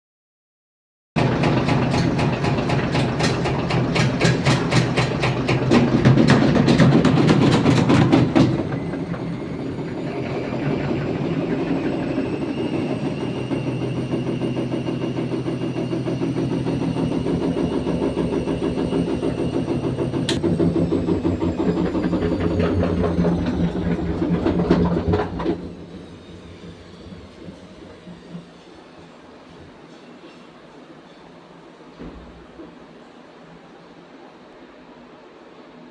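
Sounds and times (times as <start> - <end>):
washing machine clattering: 1.2 - 28.6
faint whine: 8.6 - 24.4.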